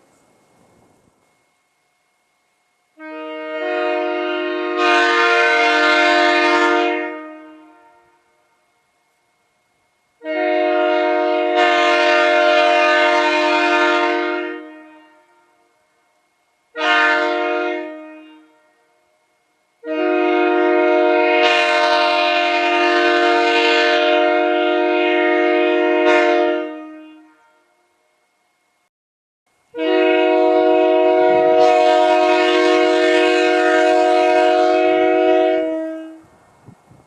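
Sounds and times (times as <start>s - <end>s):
locomotive air horn blasts: 3.0s - 8.6s, 10.2s - 16.0s, 16.7s - 19.2s, 19.8s - 28.0s, 29.7s - 36.3s.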